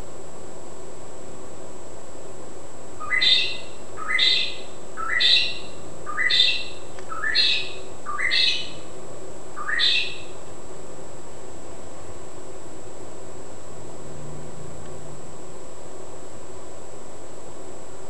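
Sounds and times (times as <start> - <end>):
background hiss: 0.0 - 18.0
bird calling: 3.0 - 8.9, 9.6 - 10.4.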